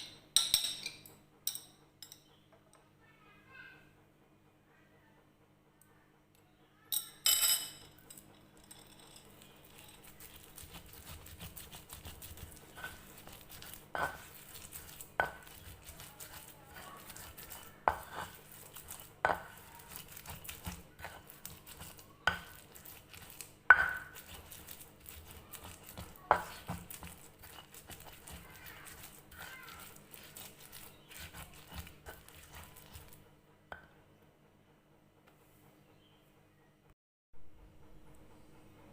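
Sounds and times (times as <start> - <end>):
pestle grinding in a mortar: 8.2 - 33.9.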